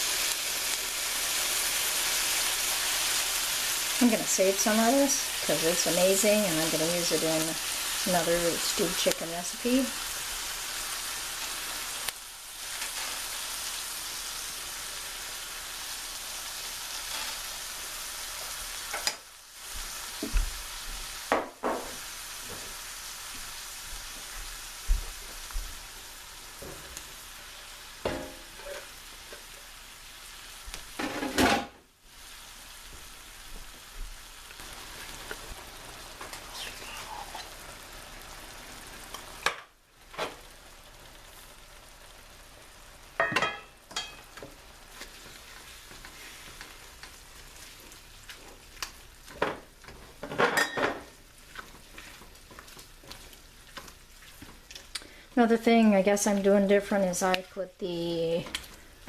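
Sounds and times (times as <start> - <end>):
onions sizzling in oil: 0.0 - 59.0
stirring: 51.3 - 54.9.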